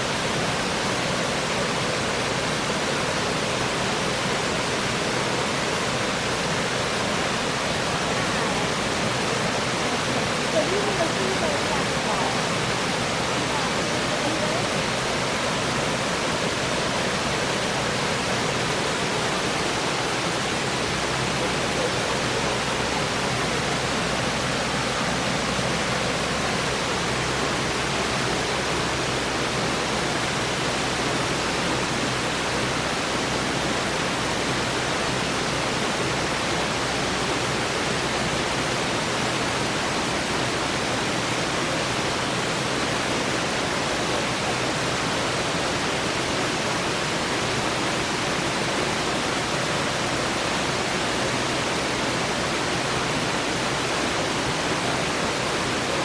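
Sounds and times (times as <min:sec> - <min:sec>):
waterfall roaring: 0:00.0 - 0:56.0.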